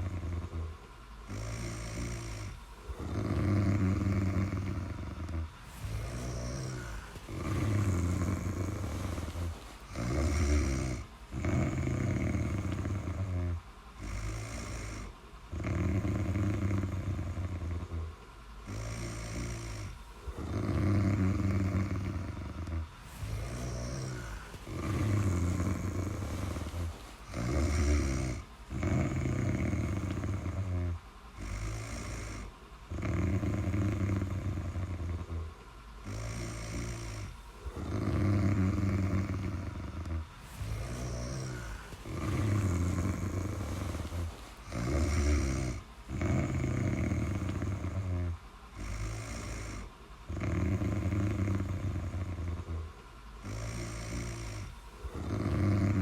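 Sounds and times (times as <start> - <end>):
person snoring: 0.0 - 56.0.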